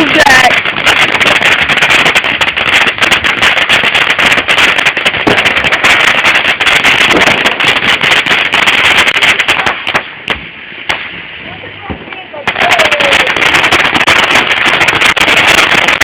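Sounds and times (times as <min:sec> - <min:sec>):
firework hissing and crackling: 0:00.0 - 0:16.0.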